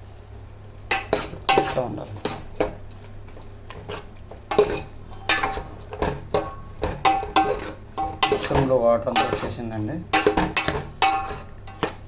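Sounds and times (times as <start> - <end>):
low steady hum: 0.0 - 12.0
spoon stirring in a pot: 0.9 - 12.0
spoon clinking against pot: 4.5 - 12.0.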